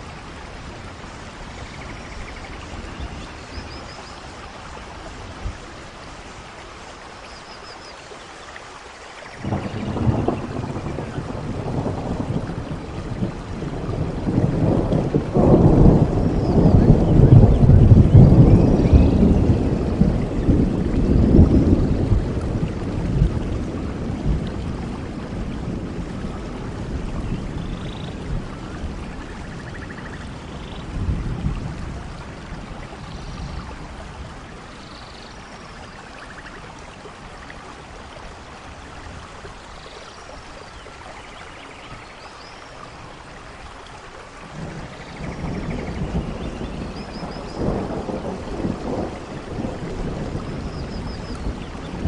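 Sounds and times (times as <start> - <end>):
steady rain: 0.0 - 52.0
rolling thunder: 9.4 - 34.9, 44.4 - 52.0.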